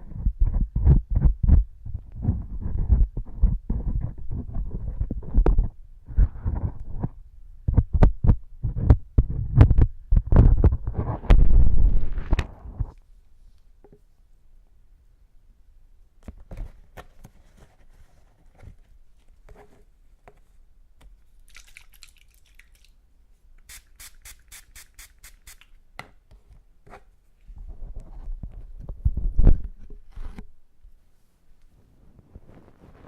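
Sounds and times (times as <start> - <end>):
short hiss: 23.7 - 25.7.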